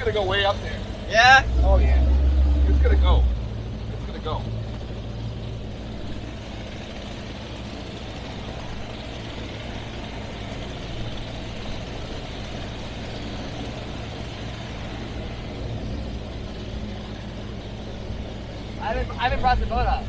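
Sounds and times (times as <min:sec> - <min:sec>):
boat engines humming: 0:00.0 - 0:20.0
rushing water noise: 0:00.0 - 0:20.0.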